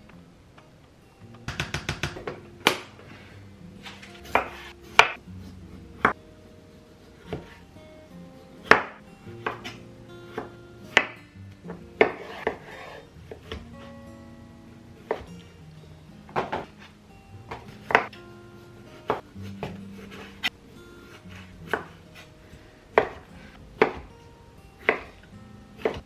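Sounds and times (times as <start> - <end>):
soft background music: 0.0 - 26.0
knife chopping on cutting board: 12.0 - 13.6, 23.0 - 24.1.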